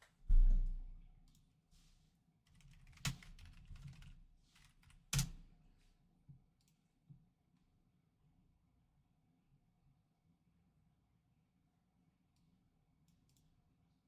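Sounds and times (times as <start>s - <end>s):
low thump: 0.3s - 0.9s.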